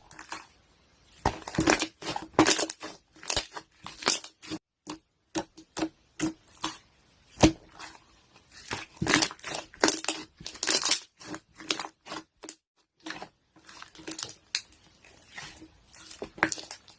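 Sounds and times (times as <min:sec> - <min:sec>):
crackling and crunching: 0:01.2 - 0:05.0, 0:07.4 - 0:16.9.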